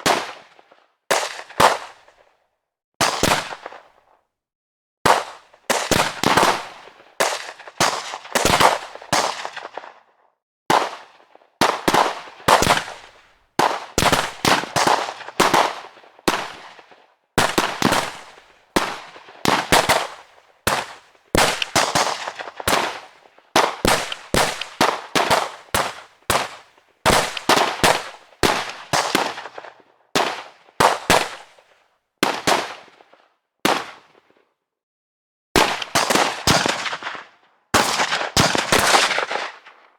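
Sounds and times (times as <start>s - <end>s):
gunshots with echo: 17.4s - 31.4s, 35.6s - 39.8s.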